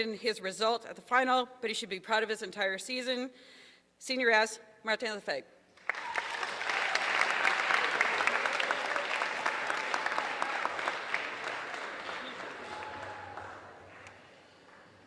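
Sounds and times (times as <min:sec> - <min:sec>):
audience applauding: 0:05.8 - 0:15.0.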